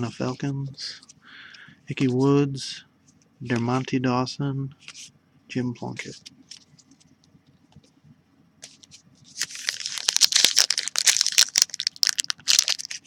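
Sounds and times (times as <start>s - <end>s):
card pack wrapper tearing and crinkling: 9.4s - 13.0s.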